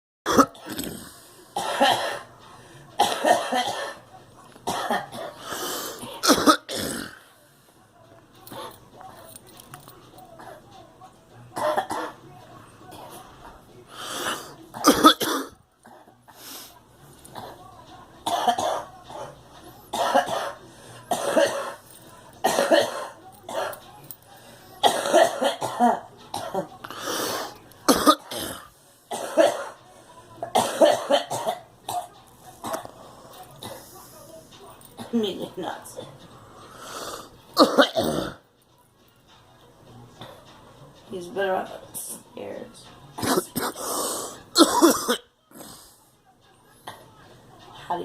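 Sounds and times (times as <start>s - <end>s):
girl coughing: 3.0s - 4.0s, 4.6s - 5.4s, 6.0s - 7.2s, 11.6s - 12.2s, 14.7s - 15.6s, 18.2s - 19.2s, 19.9s - 21.8s, 22.4s - 23.8s, 24.8s - 26.7s, 27.9s - 29.8s, 30.5s - 32.9s, 37.6s - 38.4s, 43.2s - 45.2s.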